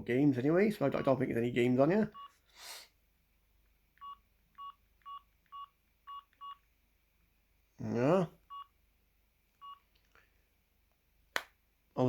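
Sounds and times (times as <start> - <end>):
phone keypad beeps: 4.0 - 6.6, 9.6 - 9.8.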